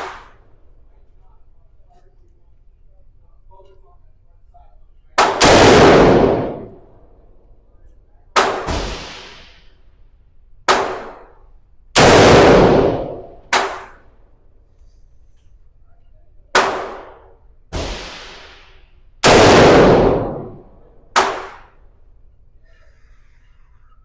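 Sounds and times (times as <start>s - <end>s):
loud gunshots ringing: 5.2s - 6.9s, 12.0s - 14.0s, 19.2s - 21.7s.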